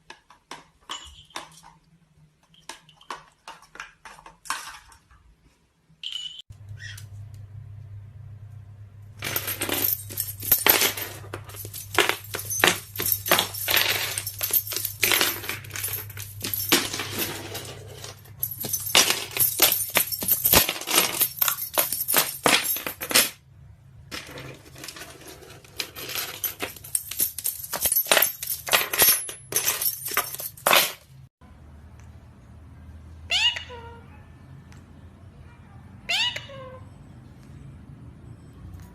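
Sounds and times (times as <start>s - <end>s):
small hard objects clinking: 9.2s - 23.4s, 24.1s - 31.1s.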